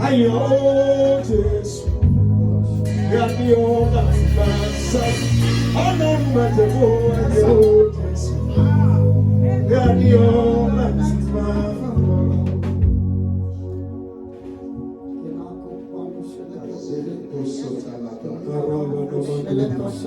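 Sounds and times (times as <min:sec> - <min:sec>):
deep bass: 0:00.0 - 0:14.9
sustained chords: 0:00.0 - 0:18.1
person singing gospel: 0:00.0 - 0:20.0.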